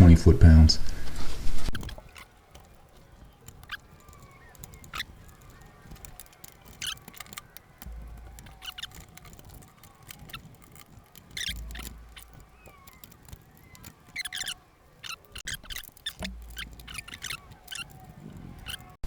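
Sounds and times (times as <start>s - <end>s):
clicks and taps of hand tools: 1.7s - 19.0s.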